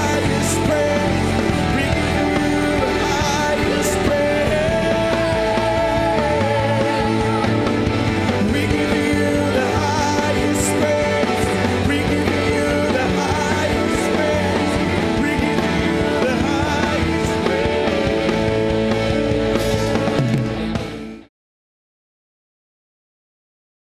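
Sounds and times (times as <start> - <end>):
live worship band music: 0.0 - 21.3.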